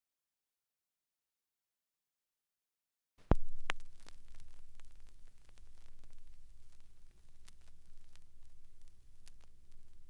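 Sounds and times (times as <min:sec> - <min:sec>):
crackling static clicks: 0:03.2 - 0:10.0
steady hiss: 0:03.2 - 0:10.0.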